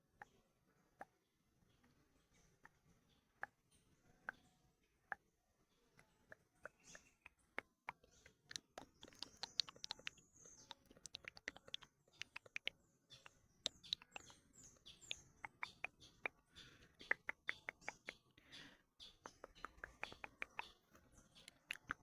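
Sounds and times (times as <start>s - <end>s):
tongue clicks and mouth smacks: 5.9s - 22.0s
high chirping squeaks: 8.2s - 16.4s.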